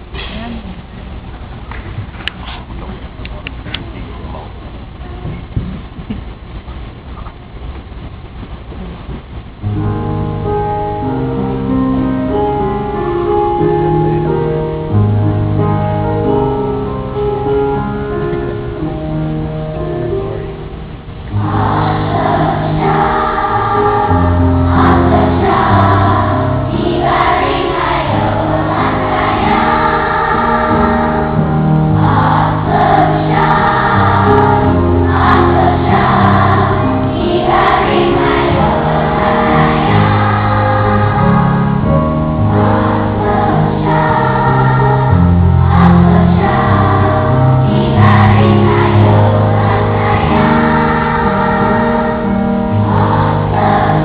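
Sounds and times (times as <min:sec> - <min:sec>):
choir singing with accompaniment: 0:21.2 - 0:54.0
steady bass line: 0:21.4 - 0:54.0.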